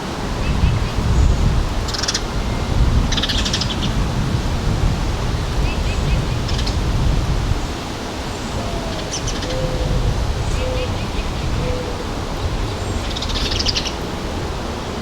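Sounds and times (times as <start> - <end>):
small songbirds chirping: 0.4 - 4.0, 5.6 - 14.3.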